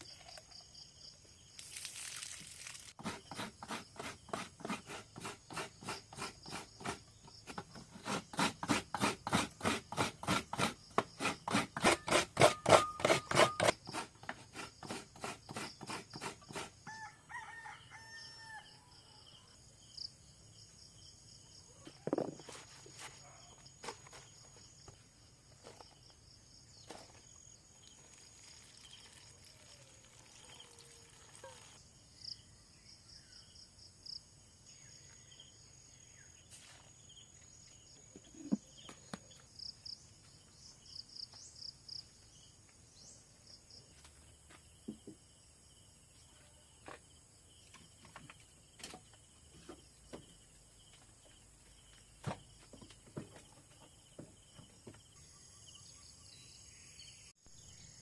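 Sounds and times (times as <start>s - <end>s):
insects chirping in trills: 0.0s - 3.0s, 16.8s - 58.0s.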